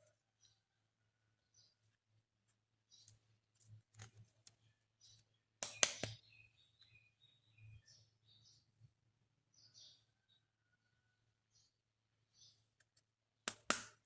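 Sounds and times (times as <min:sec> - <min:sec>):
sharp plastic clicks: 0:05.6 - 0:06.2.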